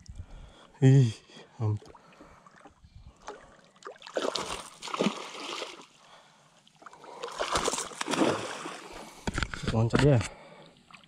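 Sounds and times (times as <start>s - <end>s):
fish thrashing and splashing: 2.5s - 6.0s, 7.0s - 9.2s.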